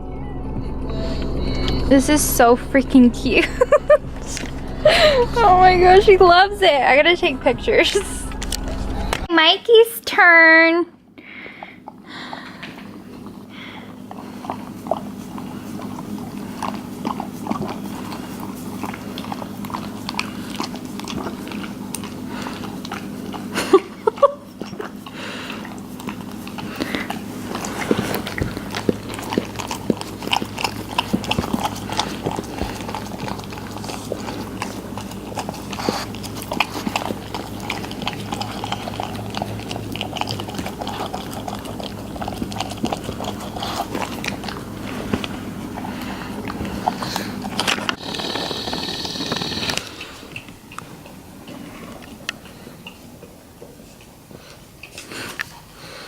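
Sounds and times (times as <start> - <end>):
steady low hum: 0.0 - 9.6, 11.0 - 56.0
dog licking and lapping: 11.8 - 56.0.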